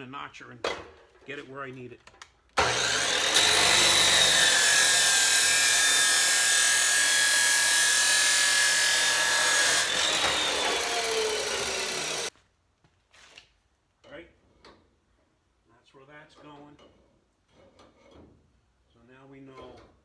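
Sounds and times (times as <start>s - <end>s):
power saw cutting steel tube: 2.6s - 12.3s.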